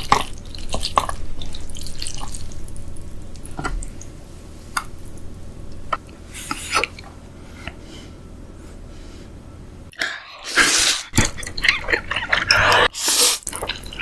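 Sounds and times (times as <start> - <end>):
wet eating clicks and smacks: 13.4 - 14.0.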